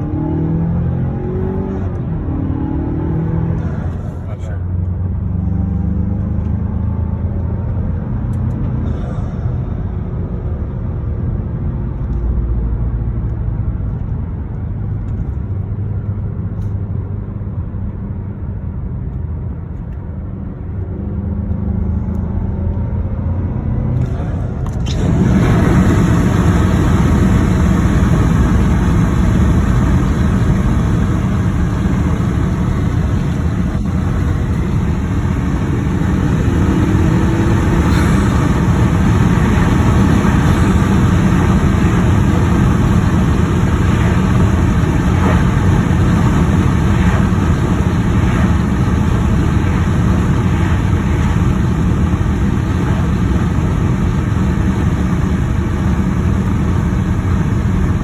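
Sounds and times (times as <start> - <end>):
car engine and road rumble: 0.0 - 58.0.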